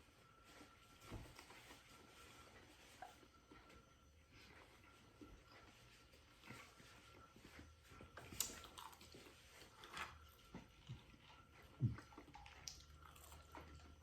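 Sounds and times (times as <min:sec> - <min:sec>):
chewing and biting sandwich: 0:07.5 - 0:14.0.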